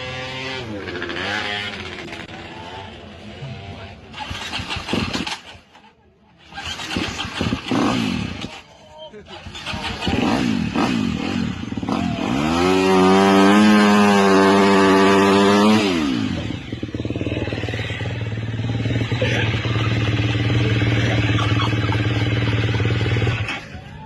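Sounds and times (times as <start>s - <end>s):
engine revving and idling: 6.4s - 24.0s.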